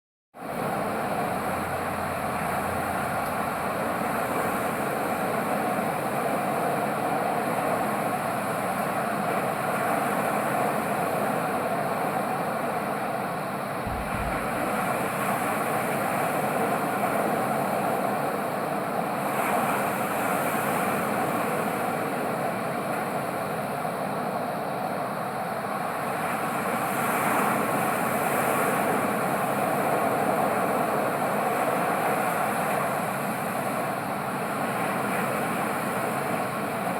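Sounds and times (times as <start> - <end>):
ocean waves breaking: 13.8 - 18.5.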